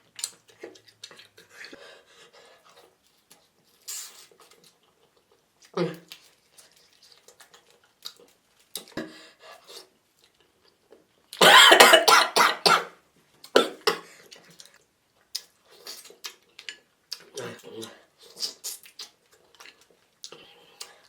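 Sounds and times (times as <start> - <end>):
clicking and smacking eating sounds: 0.0 - 1.8, 2.6 - 9.0, 13.4 - 21.0
person coughing hard: 11.4 - 12.9.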